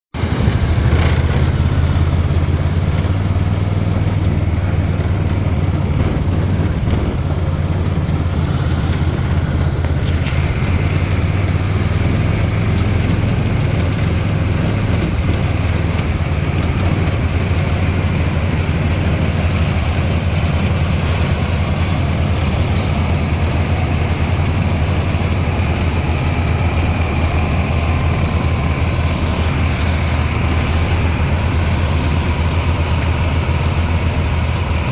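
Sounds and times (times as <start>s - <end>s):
tractor engine droning: 0.1s - 34.9s.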